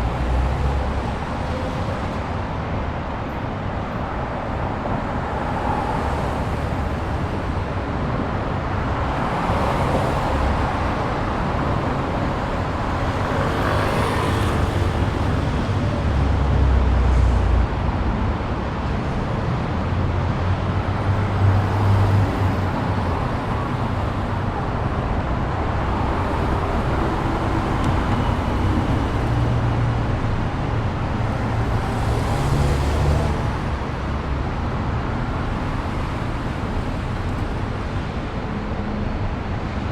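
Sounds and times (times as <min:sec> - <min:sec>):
road noise rumble: 0:00.0 - 0:39.9
vehicles passing: 0:00.0 - 0:39.9.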